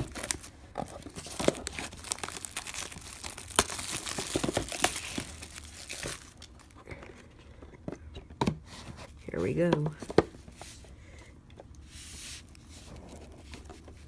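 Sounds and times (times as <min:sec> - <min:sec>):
plastic shrink wrap tearing: 0:00.0 - 0:06.8.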